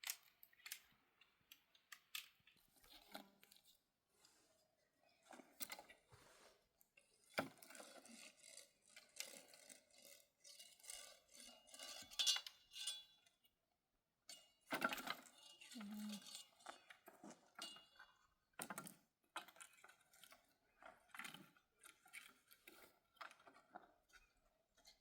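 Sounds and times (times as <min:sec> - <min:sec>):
small objects clinking and tapping: 0:12.1 - 0:13.2.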